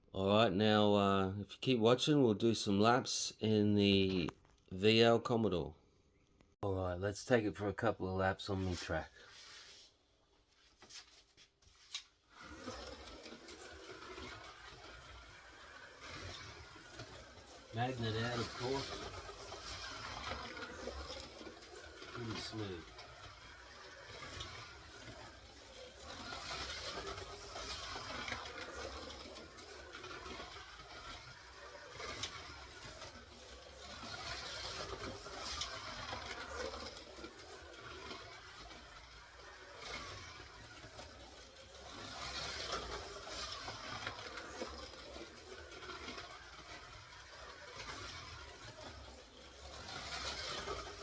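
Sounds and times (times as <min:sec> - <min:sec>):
slot car motor whirring: 0:12.2 - 0:51.0.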